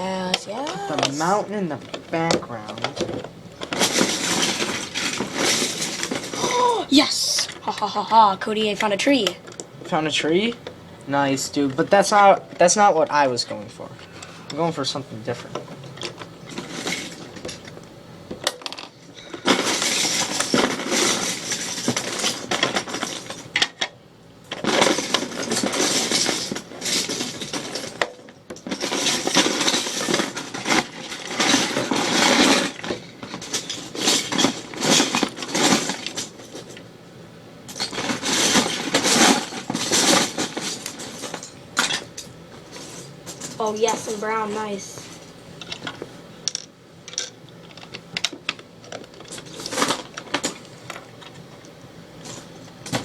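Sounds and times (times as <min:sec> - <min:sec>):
plastic bricks clattering: 0:00.9 - 0:06.7, 0:18.5 - 0:23.4, 0:24.5 - 0:36.8, 0:37.7 - 0:42.0.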